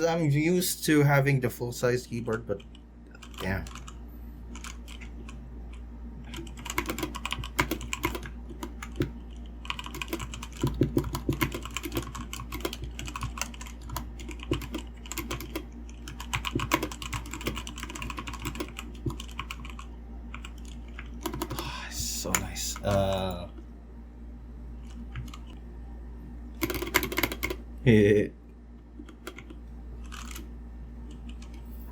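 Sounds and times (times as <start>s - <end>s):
faint low hum: 0.0s - 31.9s
typing on mechanical keyboard: 2.5s - 4.0s, 6.3s - 21.6s, 26.6s - 27.6s, 29.0s - 30.4s.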